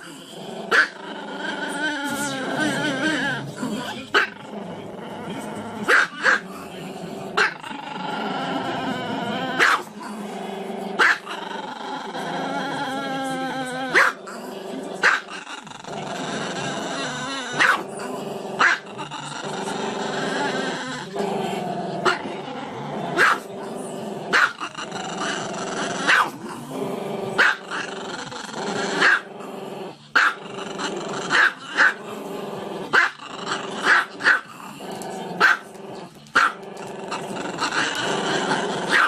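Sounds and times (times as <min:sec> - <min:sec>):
dog growling: 0:00.0 - 0:39.0
dog barking: 0:00.7 - 0:00.9, 0:05.9 - 0:06.4, 0:09.6 - 0:09.9, 0:11.0 - 0:11.3, 0:13.9 - 0:14.2, 0:15.0 - 0:15.3, 0:17.6 - 0:17.8, 0:23.2 - 0:23.4, 0:24.3 - 0:24.6, 0:26.1 - 0:26.4, 0:27.4 - 0:27.6, 0:29.0 - 0:29.2, 0:30.2 - 0:30.4, 0:31.3 - 0:32.0, 0:33.8 - 0:34.5, 0:35.4 - 0:35.7, 0:36.4 - 0:36.6.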